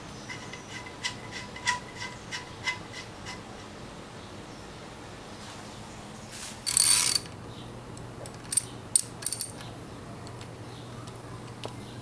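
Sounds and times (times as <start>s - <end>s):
metallic rattle: 0.0s - 3.8s, 8.5s - 9.6s.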